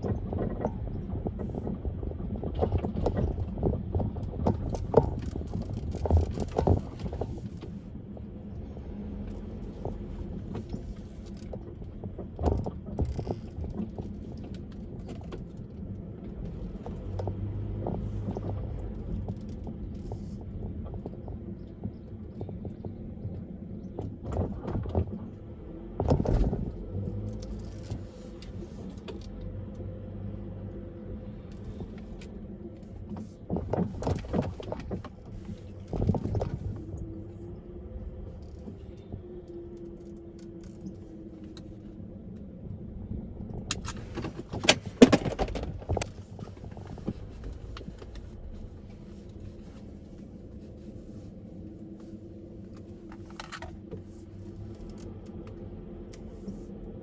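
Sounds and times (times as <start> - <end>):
road and engine hum inside car: 0.0 - 57.0
rattling clatter: 43.7 - 49.0.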